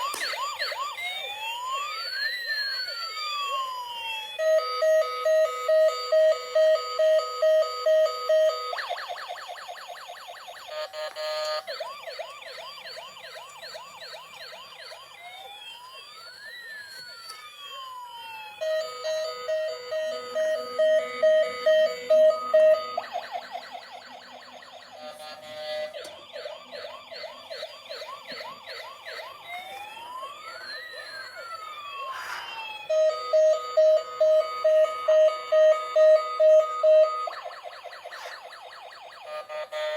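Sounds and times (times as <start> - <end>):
toy electronic siren: 0.0 - 39.9.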